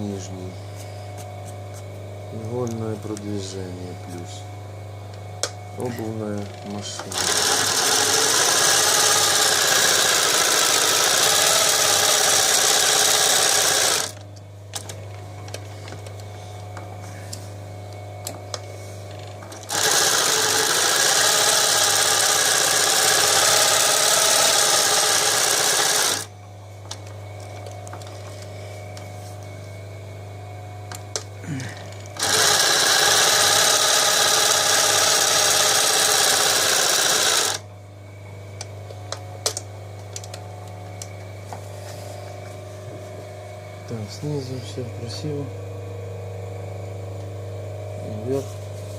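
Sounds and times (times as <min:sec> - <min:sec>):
sewing machine motor humming: 0:05.4 - 0:29.2, 0:30.8 - 0:37.7
sewing machine sewing: 0:06.4 - 0:14.2, 0:19.1 - 0:26.3, 0:31.8 - 0:37.6.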